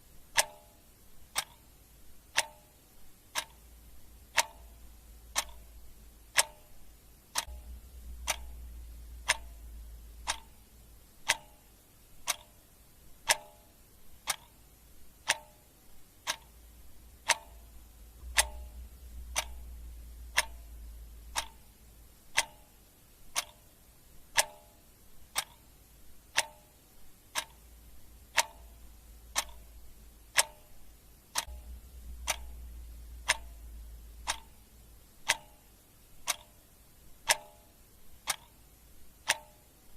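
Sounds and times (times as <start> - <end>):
clock ticking: 0.0 - 39.9.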